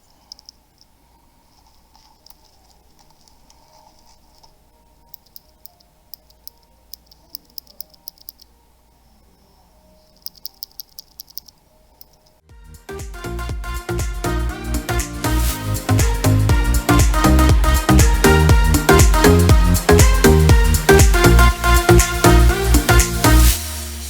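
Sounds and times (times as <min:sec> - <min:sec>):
mechanical keyboard clicking: 0:10.2 - 0:12.2.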